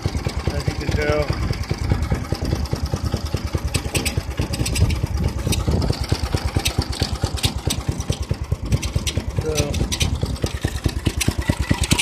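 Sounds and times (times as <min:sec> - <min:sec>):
small engine idling: 0:00.0 - 0:12.0.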